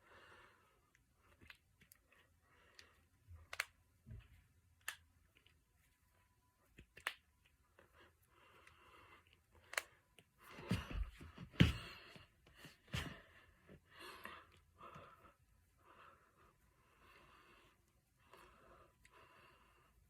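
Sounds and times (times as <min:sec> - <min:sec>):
knuckles cracking: 0:01.3 - 0:03.8, 0:06.8 - 0:07.3, 0:09.6 - 0:10.3
soft breathing noise: 0:07.7 - 0:20.0.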